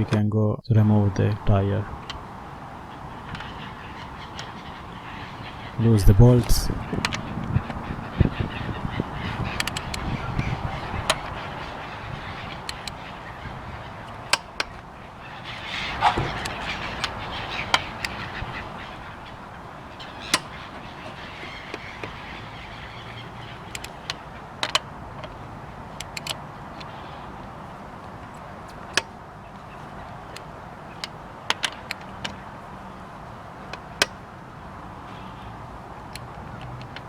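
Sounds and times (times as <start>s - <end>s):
steady background hum: 0.0s - 37.0s
wrench clicking on wheel bolts: 1.3s - 37.0s.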